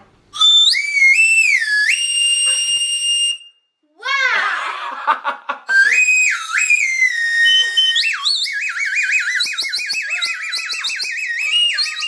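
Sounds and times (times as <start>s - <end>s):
lollipop whistle warbling tone: 0.4s - 3.6s, 5.7s - 12.0s.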